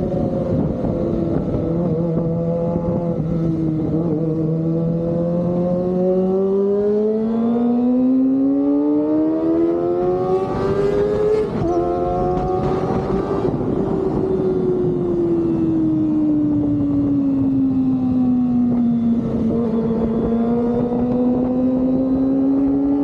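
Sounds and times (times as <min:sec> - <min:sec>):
motorcycle engine revving: 0:00.0 - 0:15.2, 0:16.2 - 0:23.0.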